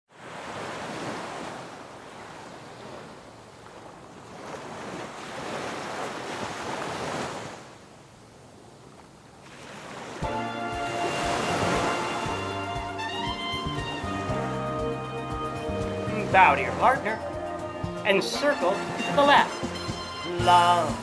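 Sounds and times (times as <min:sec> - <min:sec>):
ocean surf washing in: 0:00.1 - 0:08.0, 0:09.4 - 0:21.0
music: 0:10.2 - 0:21.0.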